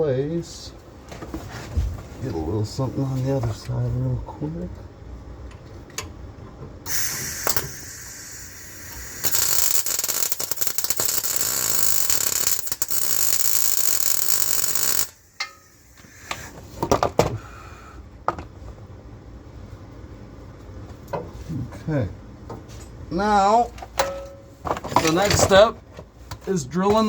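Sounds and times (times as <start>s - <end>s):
welding arc hissing and crackling: 6.9s - 16.6s
sharp knocks and clatters: 23.8s - 27.0s.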